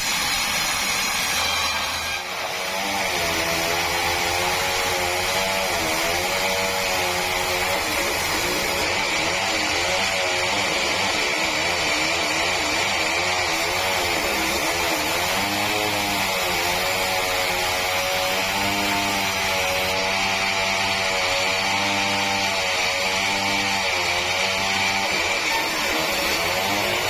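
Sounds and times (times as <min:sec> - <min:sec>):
saw high whine: 0:00.0 - 0:09.7
sawmill engine drone: 0:00.0 - 0:11.8.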